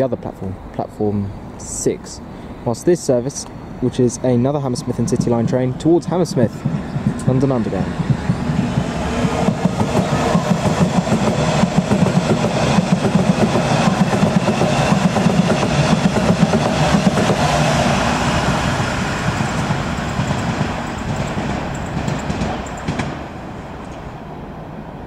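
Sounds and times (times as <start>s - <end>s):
train wheels clattering over rails: 6.4s - 24.1s.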